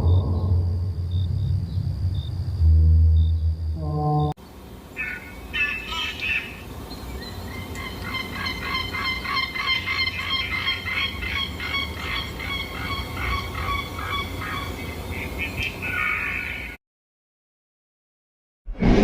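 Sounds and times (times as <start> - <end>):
low rumble: 0.0 - 4.3.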